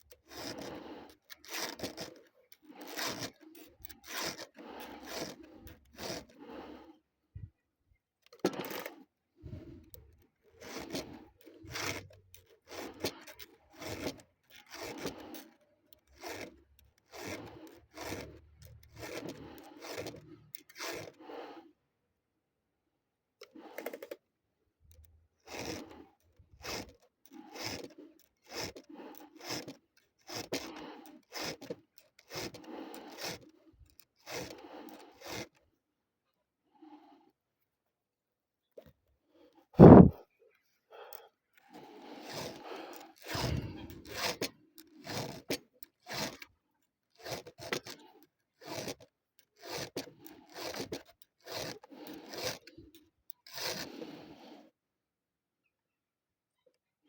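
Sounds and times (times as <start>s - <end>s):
hand tool rasping strokes: 0.1s - 6.9s, 8.4s - 9.0s, 10.6s - 21.4s, 23.5s - 24.2s, 25.5s - 35.6s, 39.8s - 40.2s, 41.0s - 54.6s.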